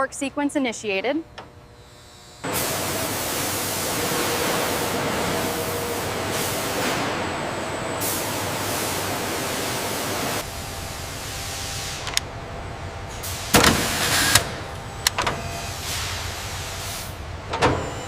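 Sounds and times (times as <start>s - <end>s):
machinery hum: 0.0s - 18.0s
machinery hiss: 1.8s - 12.2s, 12.9s - 14.9s, 15.5s - 17.4s.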